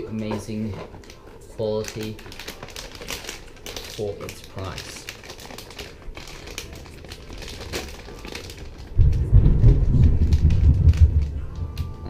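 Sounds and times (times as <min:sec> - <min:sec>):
plastic packaging crinkling: 0:00.0 - 0:12.0
loud low rumble: 0:08.6 - 0:12.0.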